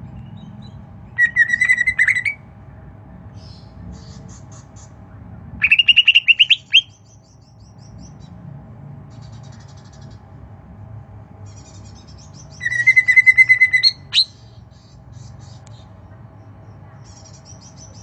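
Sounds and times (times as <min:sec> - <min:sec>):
pet bird chirping: 0:00.1 - 0:02.4, 0:05.6 - 0:08.4, 0:11.5 - 0:18.0.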